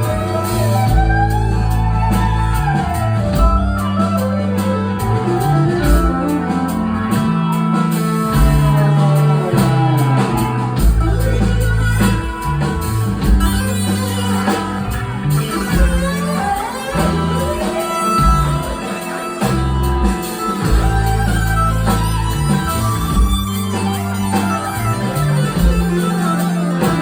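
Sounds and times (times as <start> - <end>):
bass line: 0.0 - 27.0
electric guitars: 0.0 - 27.0.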